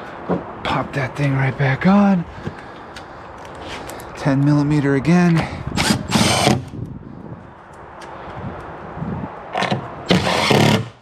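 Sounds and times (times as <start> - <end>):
cordless drill driving a bolt: 5.8 - 6.7, 9.6 - 11.0.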